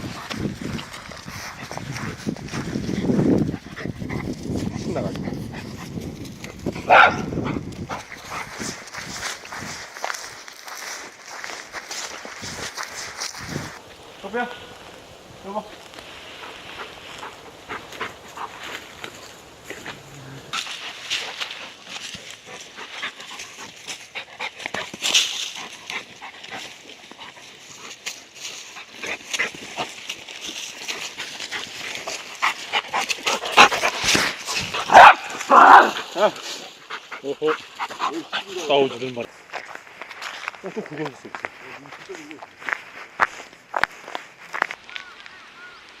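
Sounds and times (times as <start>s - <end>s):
dog panting: 0.0s - 6.8s, 7.4s - 9.0s, 16.4s - 20.0s, 20.8s - 30.0s, 30.7s - 34.9s, 36.0s - 39.2s
footsteps crunching in snow: 0.0s - 46.0s.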